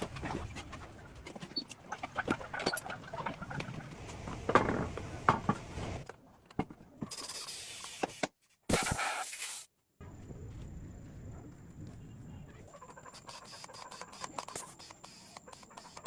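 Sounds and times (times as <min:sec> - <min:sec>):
bursts of hissing: 0:08.7 - 0:09.7.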